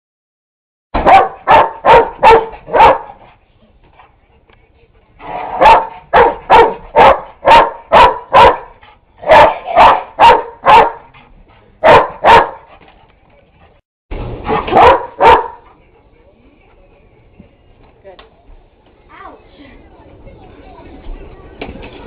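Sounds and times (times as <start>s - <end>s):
dog barking: 1.0s - 3.2s, 5.3s - 11.1s, 11.8s - 12.7s, 14.5s - 15.6s.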